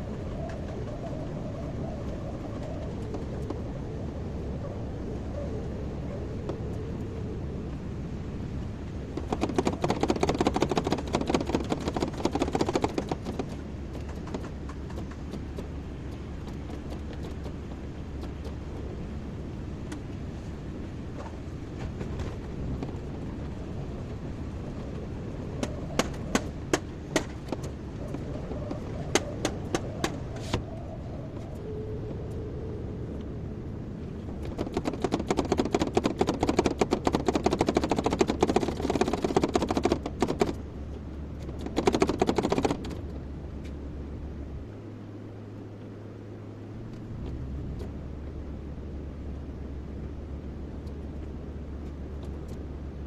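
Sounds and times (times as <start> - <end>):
rapid rattling clatter: 9.2 - 15.7, 34.4 - 40.6, 41.4 - 43.0.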